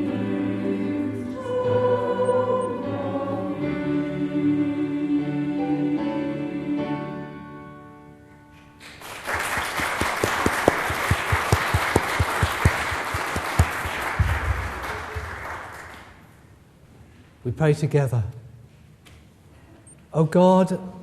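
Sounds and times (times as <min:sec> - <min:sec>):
choir singing: 0:00.0 - 0:07.4
congregation applauding: 0:08.8 - 0:16.4.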